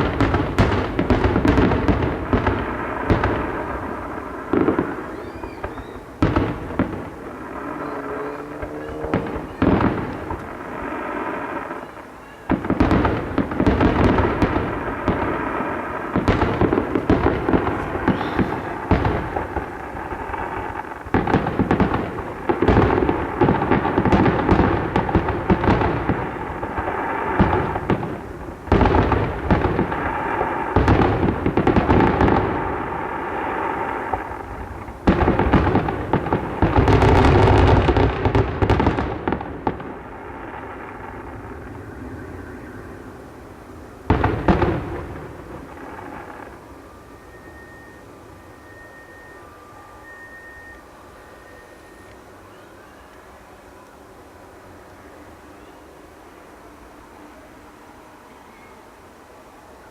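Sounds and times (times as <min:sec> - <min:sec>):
fireworks booming and crackling: 0:00.0 - 0:54.0.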